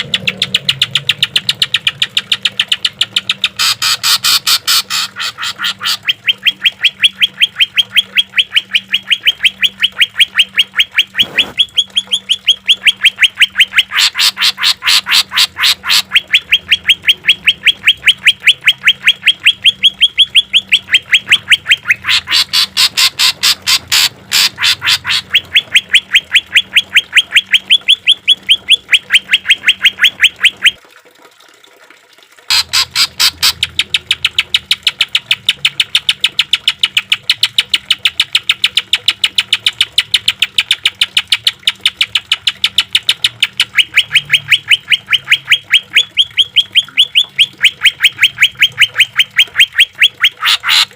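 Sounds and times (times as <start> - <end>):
bird singing rapid sharp notes: 0.0 - 30.8.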